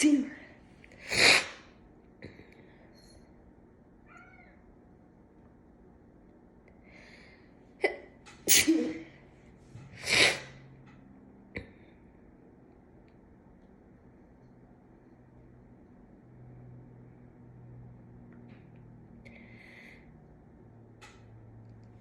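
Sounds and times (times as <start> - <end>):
cat meowing faintly: 4.0 - 4.7
woman sneezing: 7.8 - 9.2.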